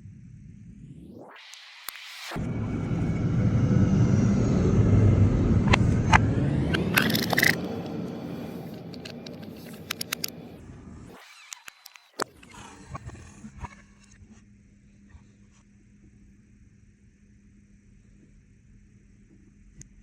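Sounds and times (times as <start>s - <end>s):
machine motor humming: 2.4s - 13.9s
sharp clicks and knocks: 8.7s - 10.5s.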